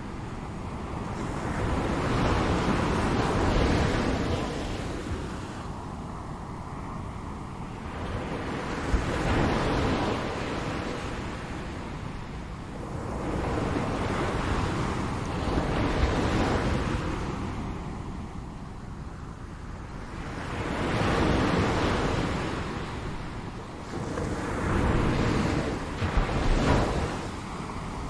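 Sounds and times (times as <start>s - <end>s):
ocean waves washing: 0.0s - 28.0s.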